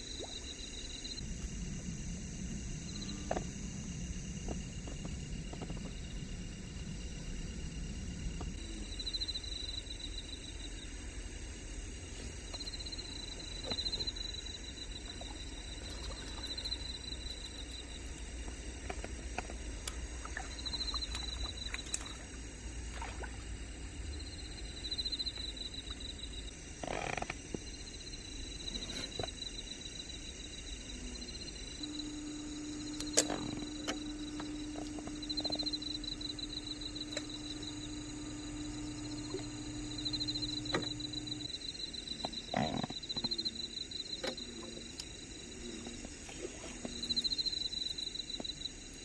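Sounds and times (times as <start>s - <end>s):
steady low rumble: 1.1s - 26.8s
faint scattered clicks: 8.4s - 22.4s
small animal pulsing trill: 8.6s - 31.8s.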